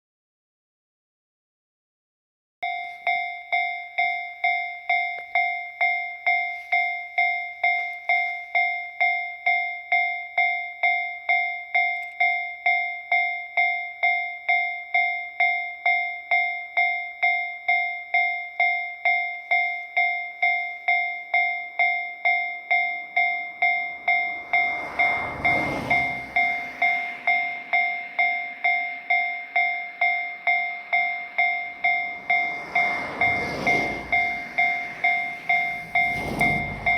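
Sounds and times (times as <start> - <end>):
level crossing alarm ringing: 2.6 - 36.9
train rumble: 23.5 - 36.9.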